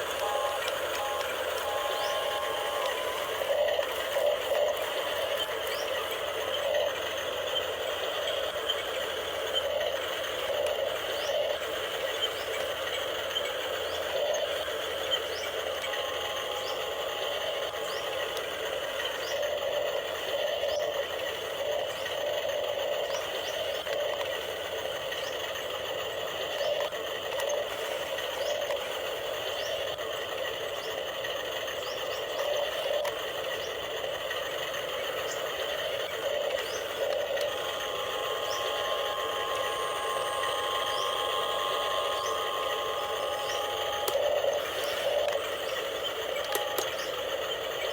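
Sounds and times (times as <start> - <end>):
higher whine: 0.0 - 12.6, 13.9 - 20.0, 35.3 - 47.9
small electric motors whining: 0.0 - 47.9.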